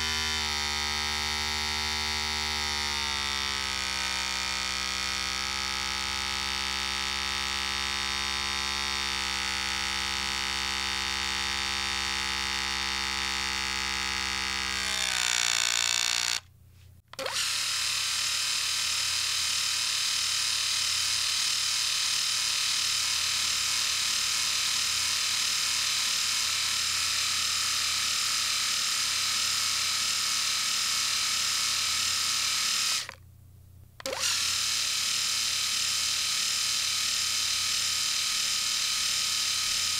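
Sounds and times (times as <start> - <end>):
higher hissy shaver buzz: 0.0 - 3.2
electric shaver buzzing: 0.0 - 16.5, 17.2 - 33.2, 34.0 - 39.9.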